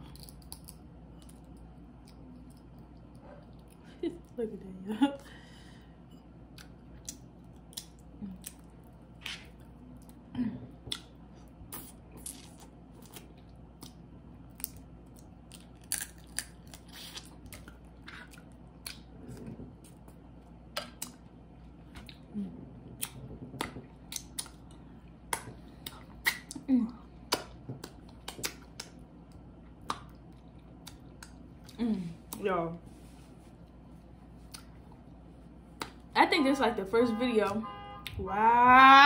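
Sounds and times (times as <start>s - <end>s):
wet chewing and lip smacks: 6.4s - 10.2s, 10.8s - 19.2s, 19.8s - 22.3s, 22.9s - 26.6s, 27.2s - 32.4s, 33.6s - 36.1s.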